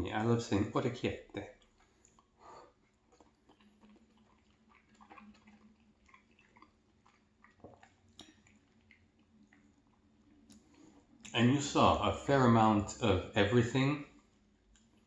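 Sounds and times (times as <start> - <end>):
chewing mouth clicks and smacks: 0.6 - 11.4, 14.3 - 15.0.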